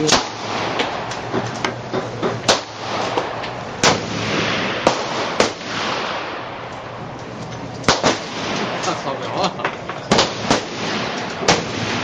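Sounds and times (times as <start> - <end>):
rifle shots: 0.0 - 1.5, 2.4 - 6.8, 7.8 - 9.0, 10.0 - 12.0.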